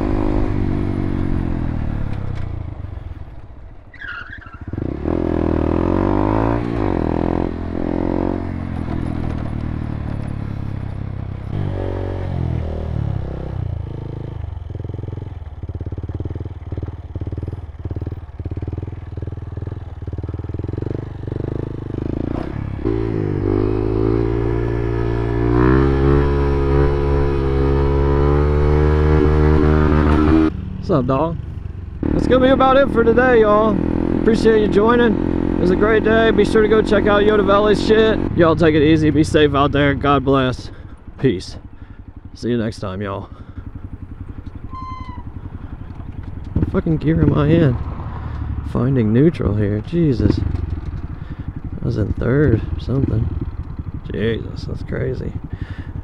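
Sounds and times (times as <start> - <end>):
motorcycle engine revving: 0.0 - 56.0.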